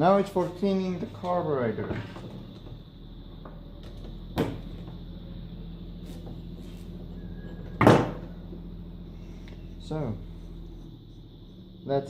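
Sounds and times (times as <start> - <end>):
low steady hum: 0.0 - 12.0
sharp knock of engine parts: 7.8 - 8.3.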